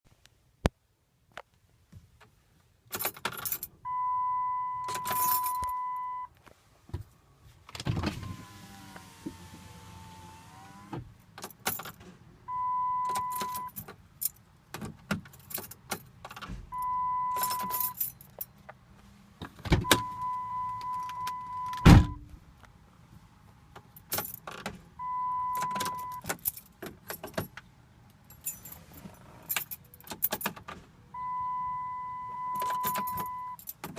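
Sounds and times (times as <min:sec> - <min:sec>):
keys jangling in ignition: 0:02.9 - 0:03.8, 0:04.8 - 0:05.8, 0:11.4 - 0:12.0, 0:13.1 - 0:14.4, 0:15.2 - 0:18.6, 0:24.0 - 0:24.6, 0:25.5 - 0:30.8, 0:32.6 - 0:33.9
dashboard warning tone: 0:03.9 - 0:06.3, 0:12.5 - 0:13.7, 0:16.7 - 0:18.0, 0:19.8 - 0:22.2, 0:25.0 - 0:26.2, 0:31.2 - 0:33.6.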